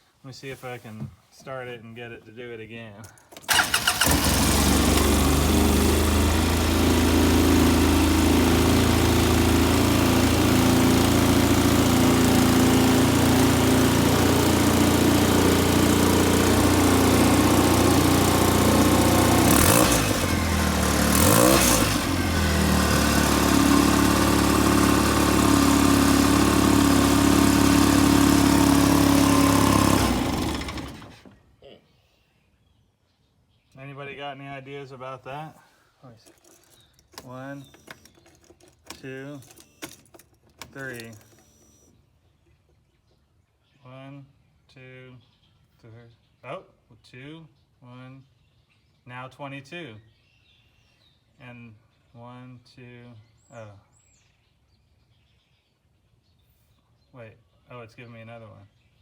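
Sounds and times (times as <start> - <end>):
utility vehicle engine idling: 3.5 - 31.4.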